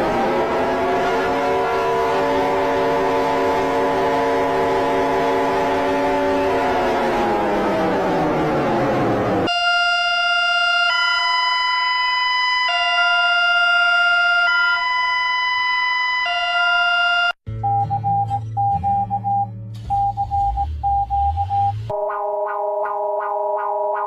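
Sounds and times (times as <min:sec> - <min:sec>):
electronic alarm tones: 0:09.4 - 0:24.0.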